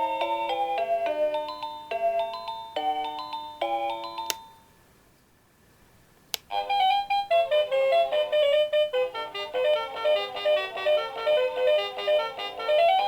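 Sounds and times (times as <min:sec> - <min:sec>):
sharp click: 0:06.3 - 0:06.5.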